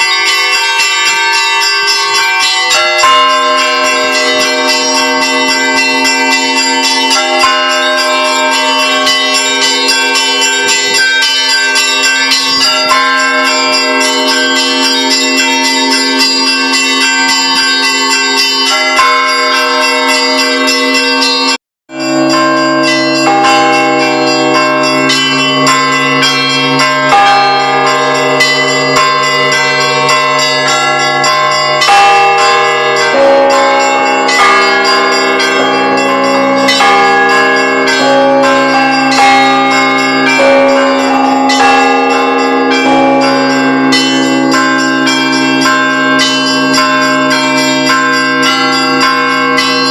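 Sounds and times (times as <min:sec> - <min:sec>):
church bells ringing: 0:00.0 - 0:49.9
deeper bell ringing: 0:00.0 - 0:49.9.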